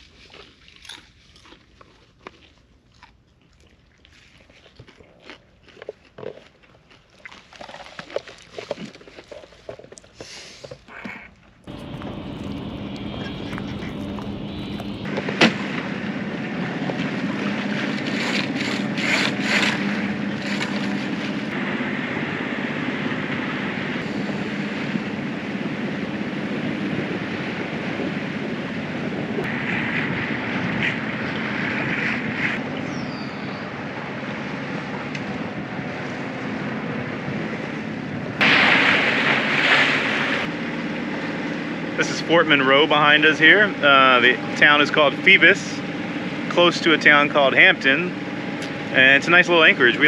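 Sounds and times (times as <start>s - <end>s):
wind: 0.0s - 50.0s
boat engine running: 11.6s - 50.0s
water noise: 11.6s - 50.0s.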